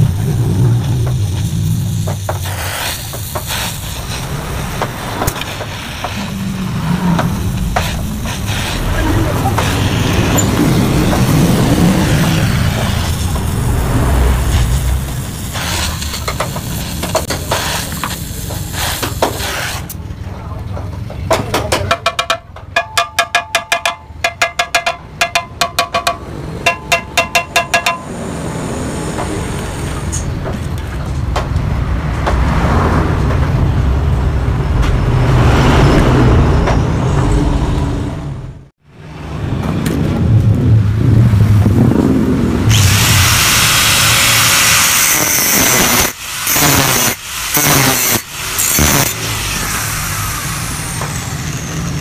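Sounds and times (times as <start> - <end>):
loud steady machine noise: 0.0 - 17.3, 41.2 - 52.0
hammer striking metal exhaust: 0.0 - 19.4, 21.3 - 30.7
bright hiss: 0.0 - 19.9, 42.7 - 51.7.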